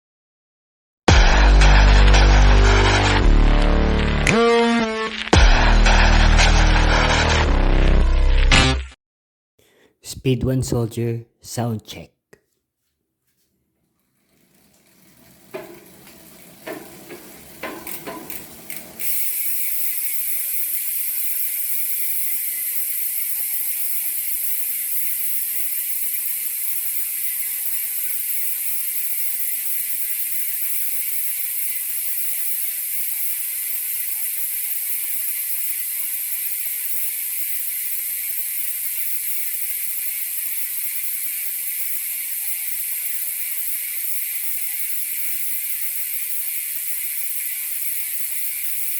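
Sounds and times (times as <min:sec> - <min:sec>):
bicycle hub freewheel buzzing: 0:01.1 - 0:04.4, 0:14.0 - 0:48.9.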